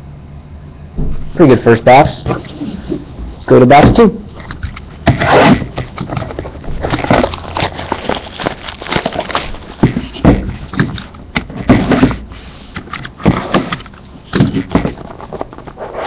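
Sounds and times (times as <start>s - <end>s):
box wrapping crinkling: 5.1s - 12.5s.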